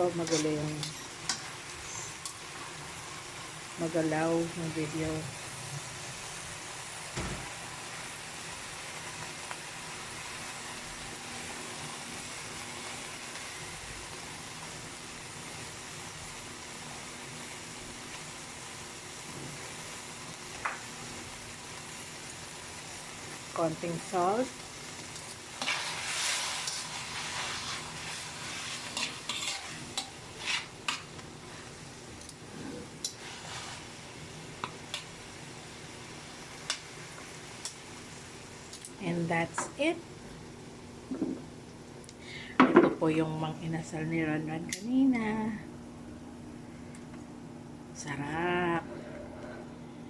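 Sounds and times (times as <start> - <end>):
vegetables sizzling in a pan: 0.0 - 47.0
spatula scraping a pan: 0.1 - 2.3, 25.5 - 31.1, 32.5 - 34.0.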